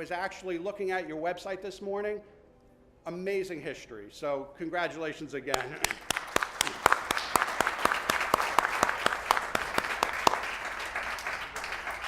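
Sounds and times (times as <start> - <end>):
audience applauding: 5.5 - 12.0.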